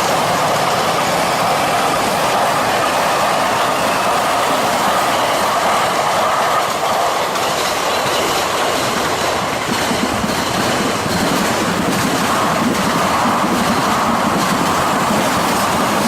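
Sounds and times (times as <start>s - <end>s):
train passing on rails: 0.0s - 16.0s.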